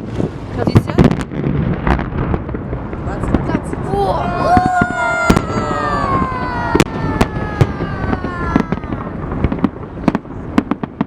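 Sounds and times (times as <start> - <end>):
firework sharp bangs: 0.0 - 11.0
falling firework whistle: 4.4 - 10.2.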